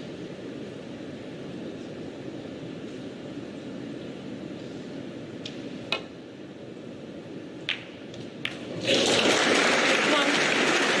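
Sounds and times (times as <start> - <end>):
quiet arena hum: 0.0 - 11.0
audience applause: 8.7 - 11.0.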